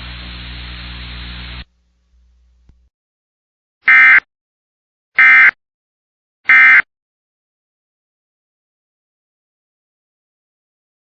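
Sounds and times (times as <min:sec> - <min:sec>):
radio receiver hiss: 0:00.0 - 0:01.7.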